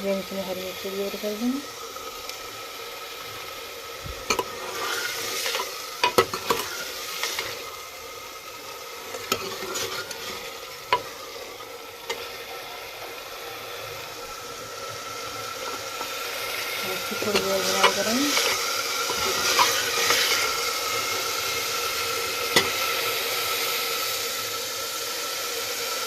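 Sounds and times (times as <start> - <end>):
masala sizzling in a pan: 0.0 - 26.0
spoon scraping against pan: 9.2 - 11.2, 17.2 - 20.6.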